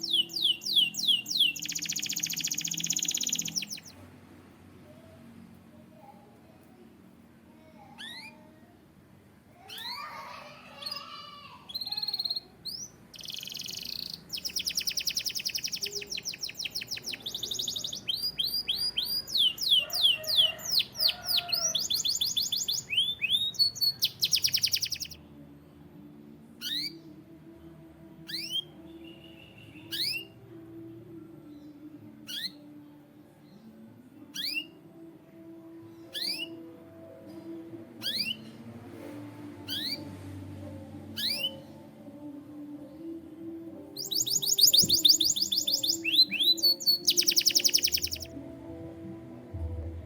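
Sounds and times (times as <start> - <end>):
canary chirping: 0.0 - 4.0, 7.7 - 8.6, 11.7 - 25.2, 26.6 - 27.0, 28.2 - 30.4, 32.2 - 32.8, 34.3 - 34.8, 36.1 - 36.6, 38.0 - 38.6, 39.6 - 40.1, 41.2 - 41.8, 43.9 - 48.3
canary trilling: 0.0 - 4.0, 7.9 - 8.5, 9.7 - 25.2, 26.6 - 27.0, 28.2 - 28.7, 29.8 - 30.4, 32.2 - 32.7, 34.3 - 34.8, 36.1 - 36.6, 38.0 - 38.5, 39.6 - 40.1, 41.1 - 41.7, 43.9 - 48.3.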